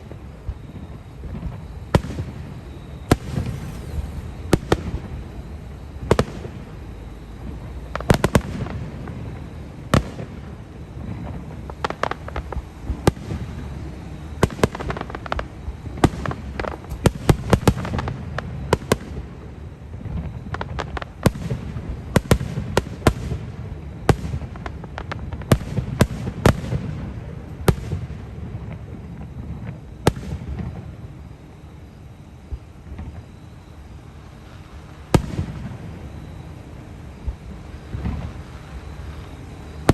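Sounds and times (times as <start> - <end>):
continuous low rumble: 0.0 - 39.9
firework shells bursting: 1.3 - 19.0.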